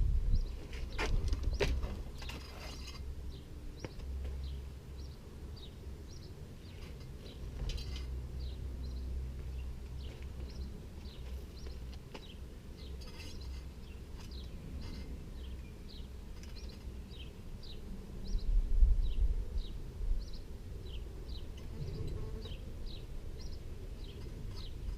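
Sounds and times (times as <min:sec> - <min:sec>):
low steady rumble: 0:00.0 - 0:00.6, 0:14.4 - 0:22.2
small bird chirping: 0:00.3 - 0:21.6.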